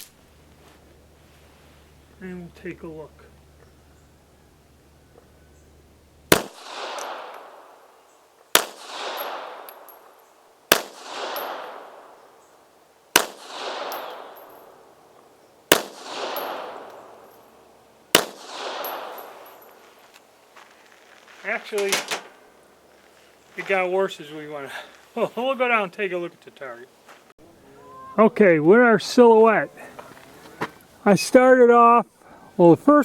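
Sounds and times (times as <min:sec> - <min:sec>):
pistol shots with echo: 0:06.3 - 0:12.4, 0:13.1 - 0:15.0, 0:15.7 - 0:17.5, 0:18.1 - 0:19.7.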